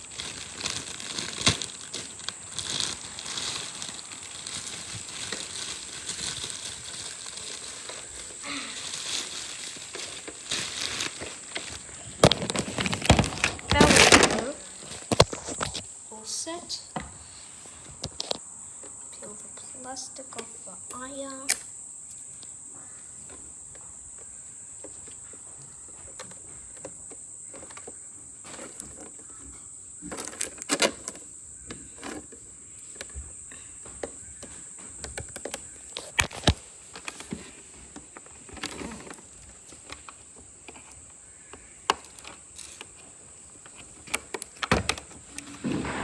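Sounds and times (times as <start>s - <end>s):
plastic film crinkling: 0.0s - 15.9s, 30.0s - 46.0s
handling clicks and knocks: 33.8s - 46.0s.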